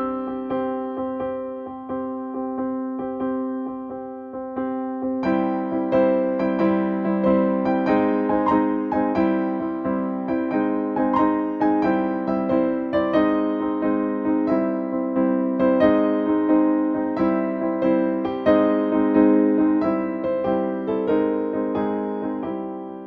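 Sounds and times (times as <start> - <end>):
piano-like keyboard melody: 0.0 - 23.0.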